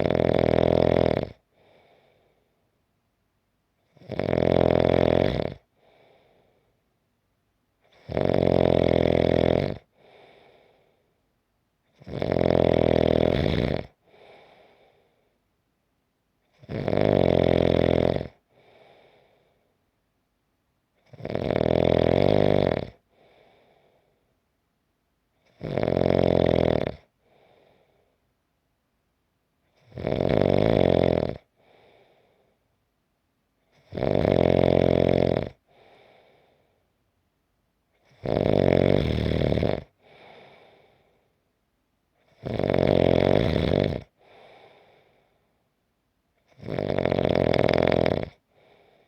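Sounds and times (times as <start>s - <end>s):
person snoring: 0.0s - 2.4s, 3.9s - 6.5s, 7.9s - 10.9s, 11.9s - 15.1s, 16.5s - 19.5s, 21.0s - 24.0s, 25.4s - 28.0s, 29.8s - 32.4s, 33.7s - 36.6s, 38.0s - 41.2s, 42.2s - 45.2s, 46.5s - 49.0s
faint breath: 1.5s - 2.7s, 5.7s - 6.9s, 9.9s - 11.3s, 14.0s - 15.4s, 18.5s - 19.9s, 23.0s - 24.4s, 27.1s - 28.3s, 31.5s - 32.7s, 35.6s - 37.0s, 39.9s - 41.5s, 44.1s - 45.7s, 48.4s - 49.0s.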